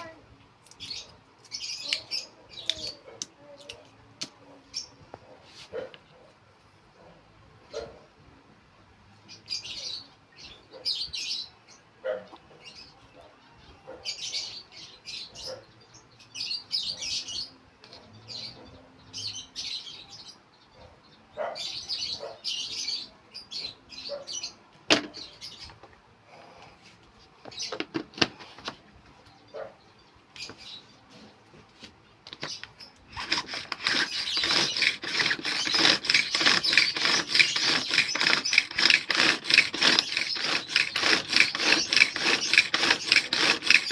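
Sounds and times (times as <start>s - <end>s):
lovebirds chirping: 0.0s - 7.1s, 9.2s - 43.9s
rapid rasping scrape: 33.1s - 43.9s.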